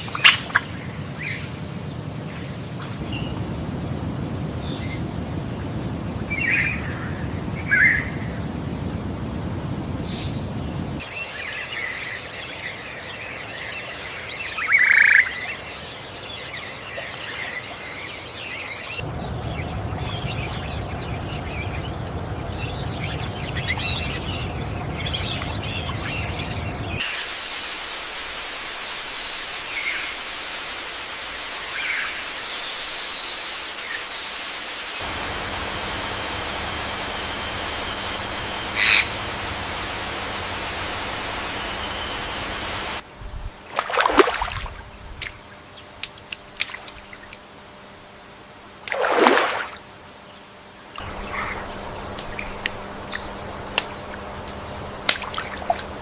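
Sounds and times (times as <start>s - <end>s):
steady background hiss: 0.0s - 56.0s
birds chirping and calling: 38.0s - 43.0s.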